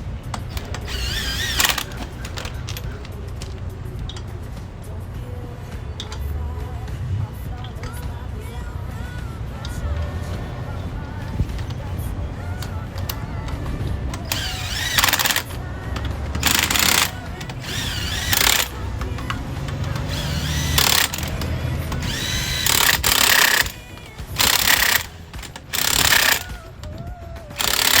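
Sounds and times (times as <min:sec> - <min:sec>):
impact gun bursts: 0:00.3 - 0:06.3, 0:12.6 - 0:26.7, 0:27.6 - 0:28.0.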